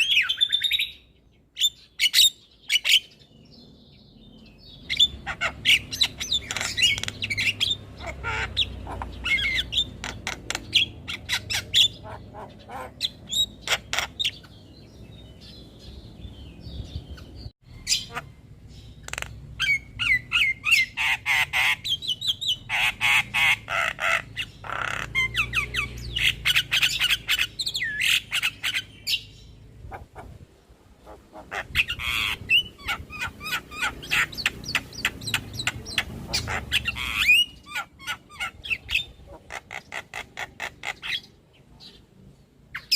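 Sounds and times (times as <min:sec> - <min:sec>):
mynas chattering and squawking: 0:04.9 - 0:14.6, 0:19.0 - 0:29.0, 0:29.8 - 0:41.4.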